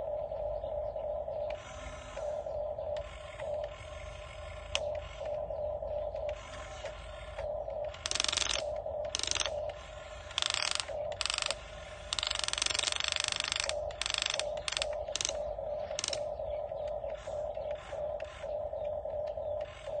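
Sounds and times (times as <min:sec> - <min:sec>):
steady humming tone: 0:00.0 - 0:20.0
ratcheting mechanical clicking: 0:07.9 - 0:09.7, 0:10.3 - 0:16.3.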